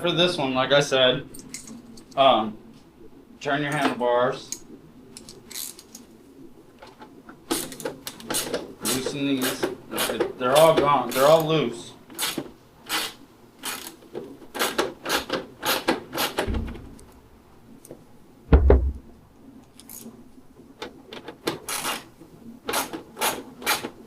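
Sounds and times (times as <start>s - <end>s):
heavy thump: 16.4s - 17.3s, 18.5s - 19.1s.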